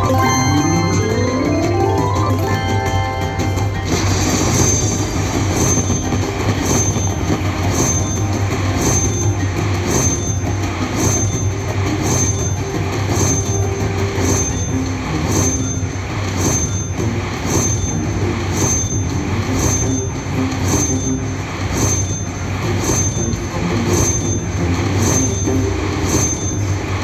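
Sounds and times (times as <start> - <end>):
casino floor din: 0.0 - 7.1
slot machine chime: 0.0 - 22.0
steady hum: 0.0 - 27.0.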